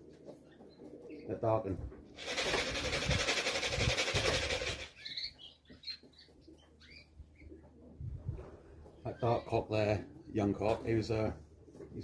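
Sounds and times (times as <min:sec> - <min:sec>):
pigeon wings flapping: 0:02.2 - 0:05.0.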